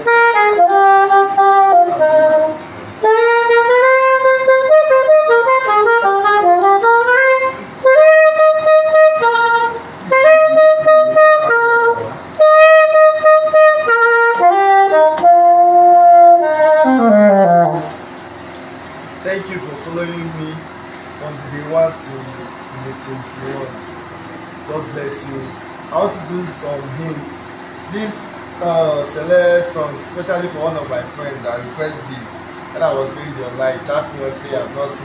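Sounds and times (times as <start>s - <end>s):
saxophone playing slow melody: 0.0s - 18.2s.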